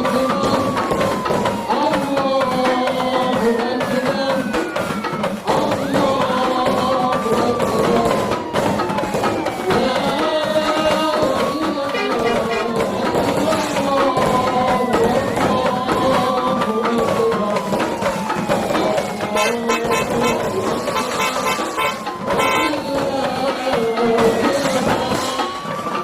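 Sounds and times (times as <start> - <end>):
music with percussion beat: 0.0 - 26.0
wailing rising and falling tone: 11.8 - 15.3, 18.6 - 24.5.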